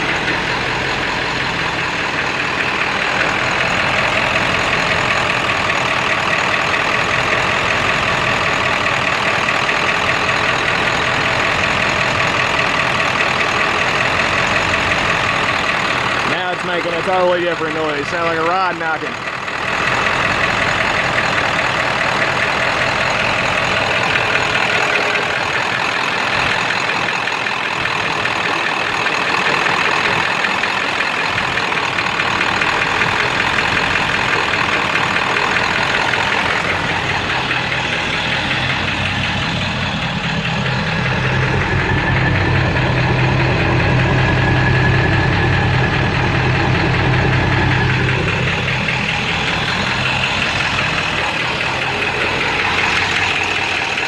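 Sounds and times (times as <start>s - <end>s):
deep engine hum: 0.0s - 54.0s
diesel engine idling roughly: 0.0s - 54.0s
engine rod knocking: 0.0s - 54.0s.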